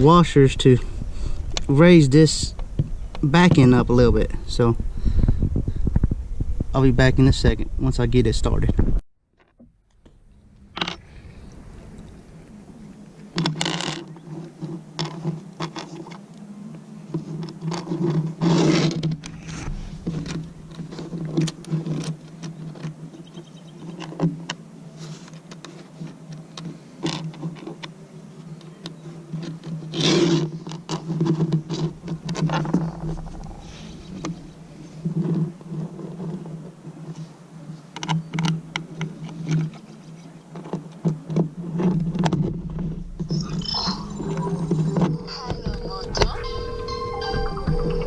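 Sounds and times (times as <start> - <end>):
steady low hum: 9.6 - 25.0, 31.0 - 40.4, 41.5 - 48.0
rustling scrapes: 10.7 - 16.3, 17.0 - 27.8, 29.0 - 37.9.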